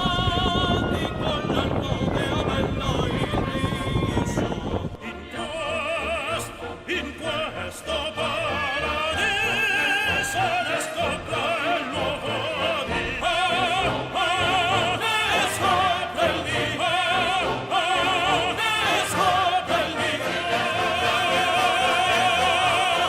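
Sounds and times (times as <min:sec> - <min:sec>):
operatic singing: 0:00.0 - 0:23.0
orchestra playing: 0:05.3 - 0:23.0.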